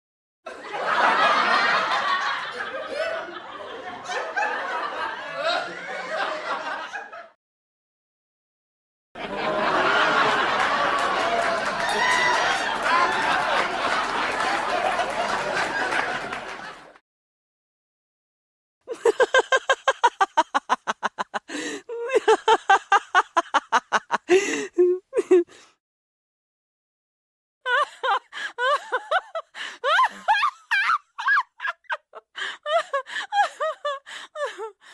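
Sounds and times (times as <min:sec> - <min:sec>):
recorded laughter: 0:00.5 - 0:07.4, 0:09.2 - 0:17.0, 0:18.9 - 0:25.7, 0:27.7 - 0:34.8
person laughing hard: 0:18.9 - 0:25.7, 0:27.7 - 0:34.8.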